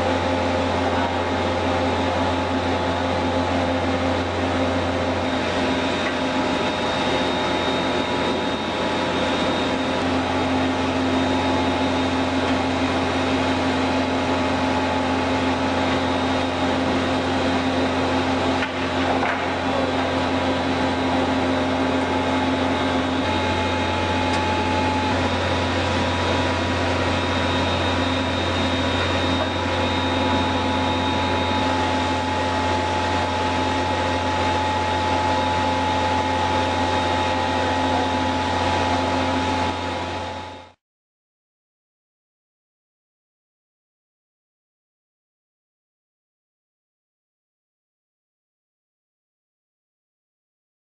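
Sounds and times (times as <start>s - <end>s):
machinery motor hum: 0.0s - 40.8s.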